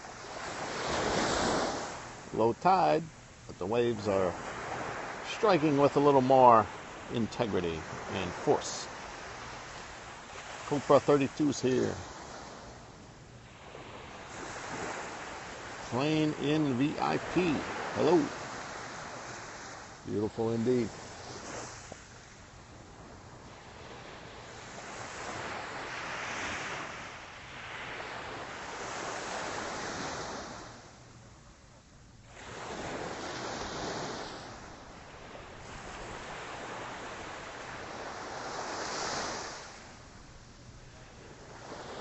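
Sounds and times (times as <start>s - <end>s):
waves breaking on a beach: 0.0s - 42.0s.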